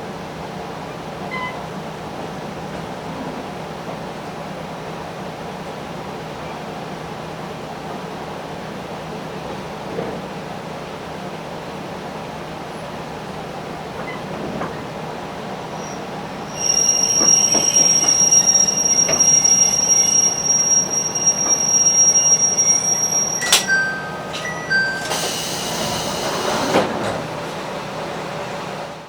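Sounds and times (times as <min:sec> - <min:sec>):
railcar running noise: 0:00.0 - 0:29.0
train wheels squealing on rails: 0:14.0 - 0:27.6
short beeps: 0:16.5 - 0:26.3.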